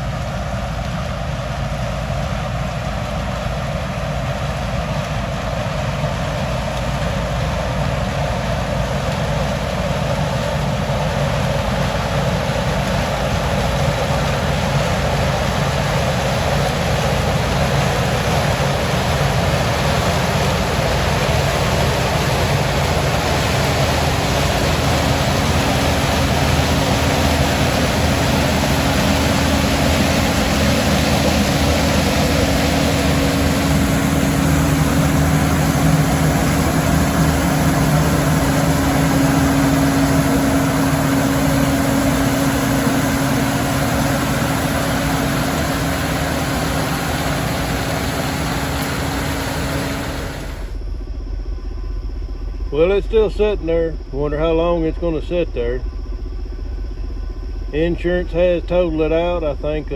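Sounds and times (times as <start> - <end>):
vehicle engine running: 0.0 - 59.9
rushing noise: 15.4 - 51.0.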